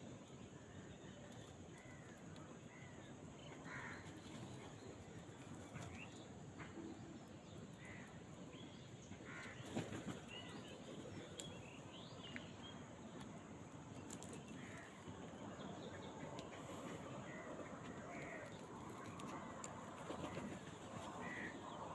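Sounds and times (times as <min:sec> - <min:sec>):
crows calling: 0:01.7 - 0:04.2, 0:07.8 - 0:08.2, 0:09.2 - 0:09.8, 0:14.5 - 0:15.6, 0:16.2 - 0:21.9.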